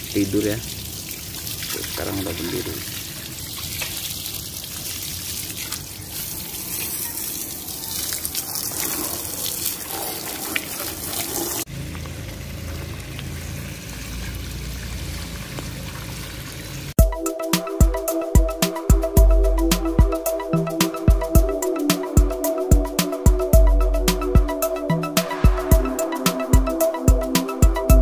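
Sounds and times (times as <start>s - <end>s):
running water splashing: 0.0s - 17.0s.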